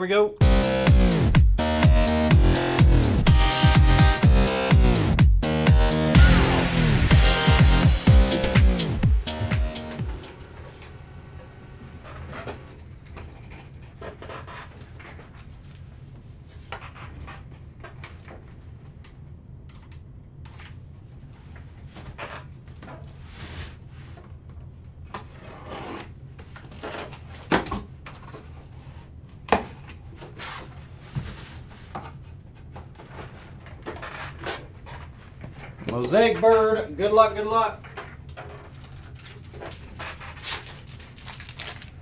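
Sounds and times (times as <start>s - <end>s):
low hum: 6.2s - 12.8s
cards rubbing and rustling: 38.6s - 42.0s.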